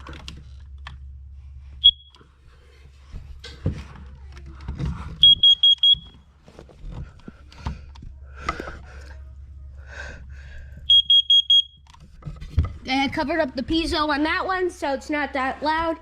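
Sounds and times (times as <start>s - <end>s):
high-pitched alarm beeps: 1.8s - 2.2s, 5.2s - 6.2s, 10.9s - 11.8s.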